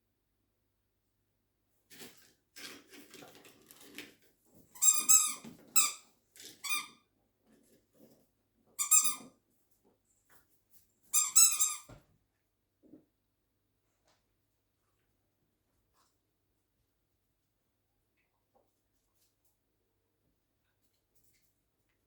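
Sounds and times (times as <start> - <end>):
squeaky toy squeaks: 4.8 - 6.0, 6.6 - 7.0, 8.8 - 9.3, 11.1 - 11.9.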